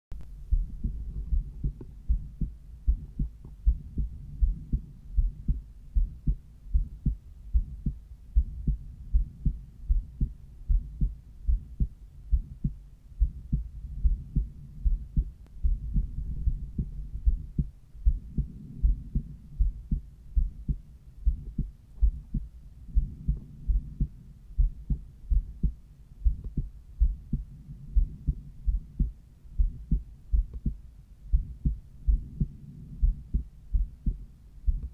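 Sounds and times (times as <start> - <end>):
faint rumble: 0.1 - 34.9
heartbeat through stethoscope: 0.3 - 34.9.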